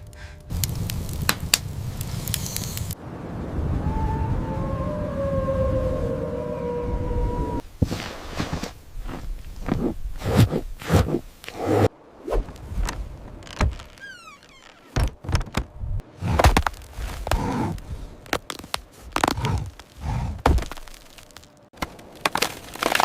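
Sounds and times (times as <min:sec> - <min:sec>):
short falling squeak: 0:13.5 - 0:15.0.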